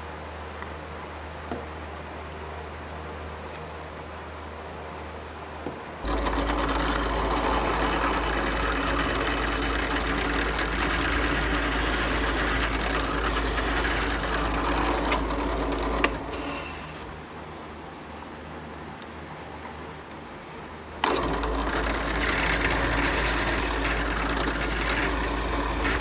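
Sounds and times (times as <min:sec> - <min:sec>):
power tool motor running: 0:06.0 - 0:17.2, 0:21.0 - 0:26.0.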